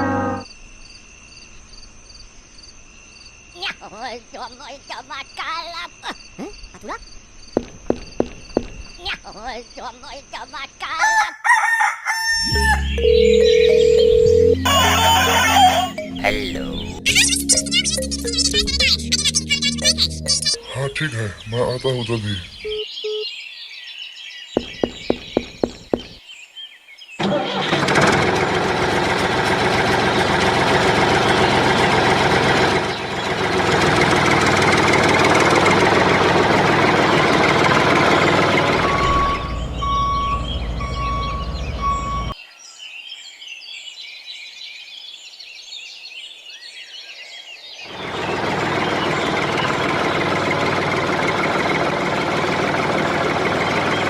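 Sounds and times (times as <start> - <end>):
deep hum: 0.0 - 0.5, 12.4 - 21.5
vehicle engine running: 24.6 - 26.2, 27.2 - 42.4, 47.9 - 54.0.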